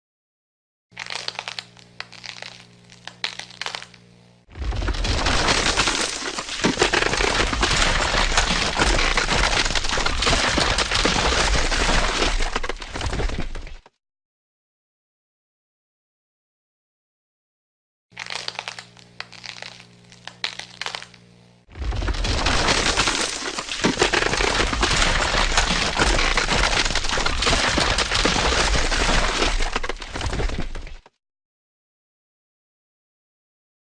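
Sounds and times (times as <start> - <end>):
ice cracking and breaking: 1.0 - 3.9, 4.5 - 13.9, 18.2 - 21.1, 21.7 - 31.1
low rumble: 21.7 - 22.9.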